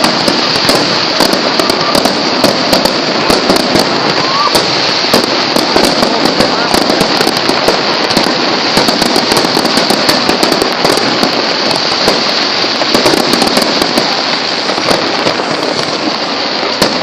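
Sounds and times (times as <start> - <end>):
firecrackers crackling: 0.0 - 17.0.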